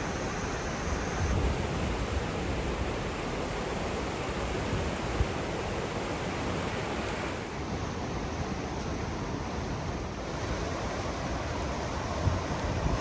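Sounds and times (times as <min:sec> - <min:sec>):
floodwater rushing: 0:00.0 - 0:07.6
wind buffeting microphone: 0:12.1 - 0:13.0.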